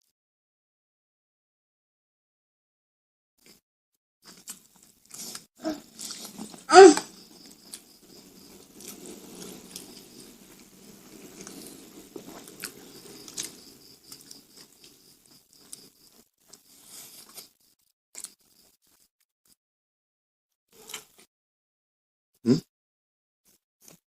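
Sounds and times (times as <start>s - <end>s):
chewing crunchy fried snacks: 4.3s - 19.1s, 20.8s - 21.3s.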